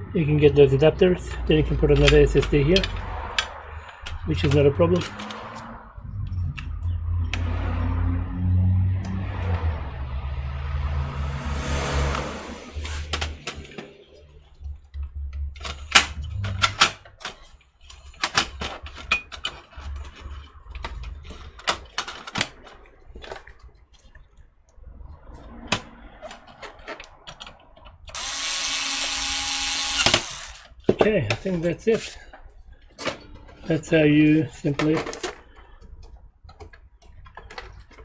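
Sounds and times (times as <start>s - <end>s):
computer parts clicking and rattling: 1.2s - 7.5s, 12.8s - 24.5s, 32.8s - 38.0s
cordless power screwdriver running: 28.2s - 30.7s.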